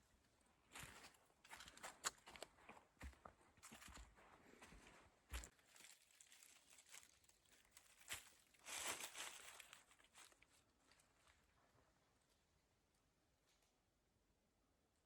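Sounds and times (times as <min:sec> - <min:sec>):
footsteps on forest trail: 0:00.7 - 0:07.2, 0:07.8 - 0:10.4.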